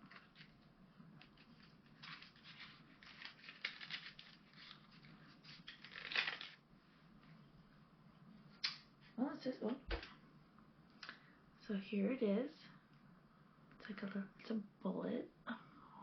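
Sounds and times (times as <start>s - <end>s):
cardboard tearing: 1.6s - 6.6s.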